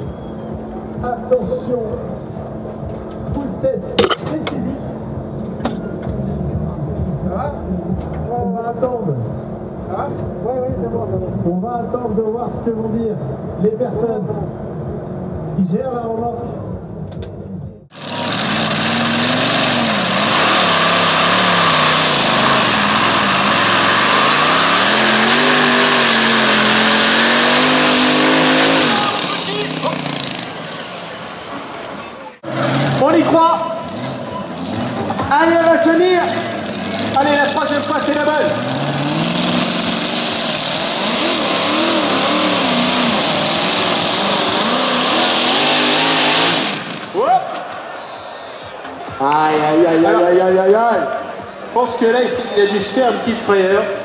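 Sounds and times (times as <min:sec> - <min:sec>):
loud dense exhaust noise: 0:00.0 - 0:54.0
truck engine revving: 0:17.9 - 0:48.2.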